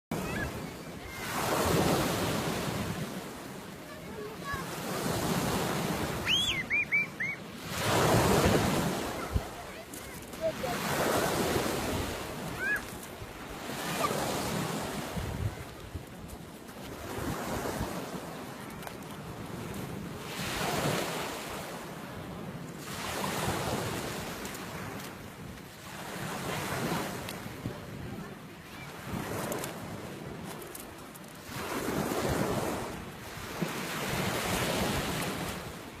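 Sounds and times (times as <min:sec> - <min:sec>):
waves washing onto shore: 0:00.1 - 0:36.0
short high chirp: 0:06.2 - 0:07.4
wind buffeting microphone: 0:14.5 - 0:18.1.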